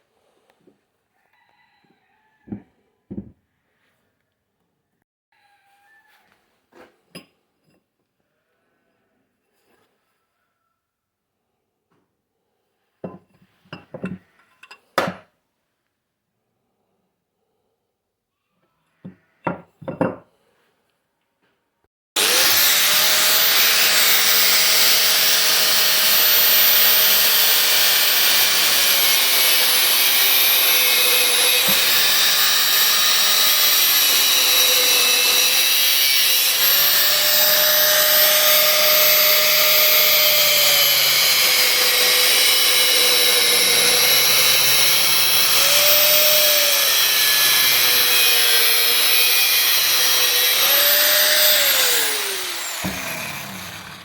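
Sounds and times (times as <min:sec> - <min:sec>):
power tool motor cutting metal: 0:22.2 - 0:54.0.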